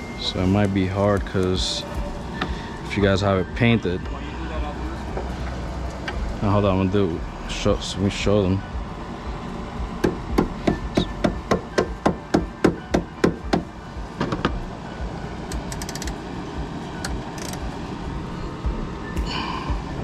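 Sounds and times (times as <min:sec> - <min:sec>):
hand hammer striking metal: 0:10.0 - 0:14.6.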